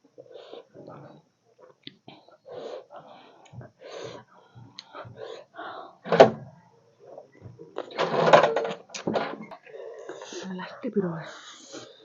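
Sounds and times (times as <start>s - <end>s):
breaths: 2.0s - 6.2s, 9.6s - 12.0s.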